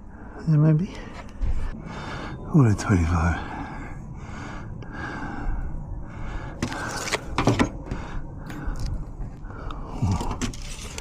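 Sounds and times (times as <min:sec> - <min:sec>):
steady low rumble: 0:00.0 - 0:11.0
crackling and scraping handling: 0:10.0 - 0:11.0.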